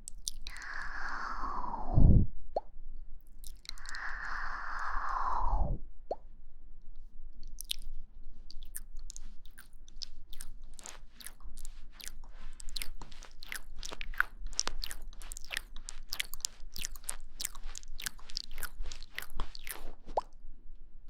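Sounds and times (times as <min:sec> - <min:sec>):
wet mouth clicks and smacks: 0:00.0 - 0:01.0, 0:03.2 - 0:05.0, 0:07.4 - 0:20.4.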